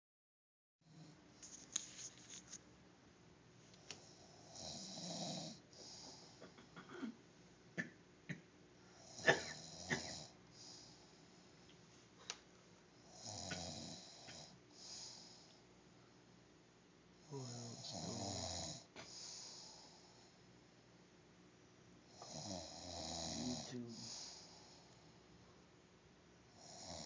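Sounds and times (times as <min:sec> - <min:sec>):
man snoring: 0:04.1 - 0:06.4, 0:09.0 - 0:10.9, 0:13.1 - 0:15.4, 0:17.2 - 0:20.0, 0:22.2 - 0:24.8, 0:26.6 - 0:27.0.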